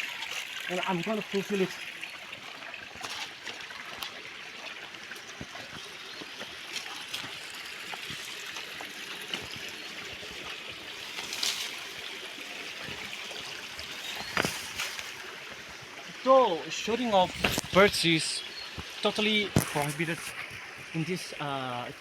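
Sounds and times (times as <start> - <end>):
river water over stones: 0.0 - 22.0.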